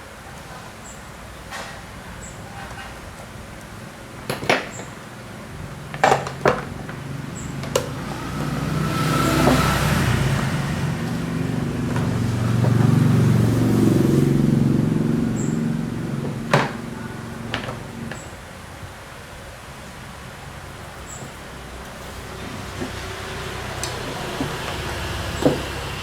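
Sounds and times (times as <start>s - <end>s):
vehicle engine passing: 6.9s - 18.3s, 19.7s - 26.0s.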